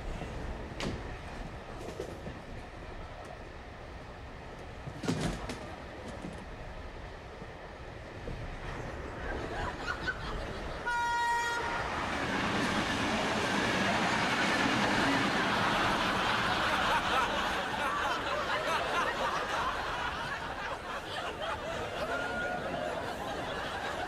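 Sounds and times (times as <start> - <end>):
train rumbling: 0.0 - 24.0
train horn blast: 10.8 - 16.8.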